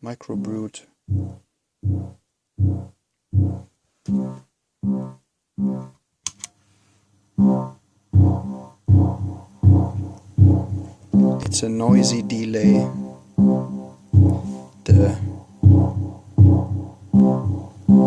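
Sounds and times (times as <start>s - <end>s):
buzzy synthesizer bass note: 0.3s - 6.0s, 7.4s - 18.0s
sharp click: 6.2s - 6.6s.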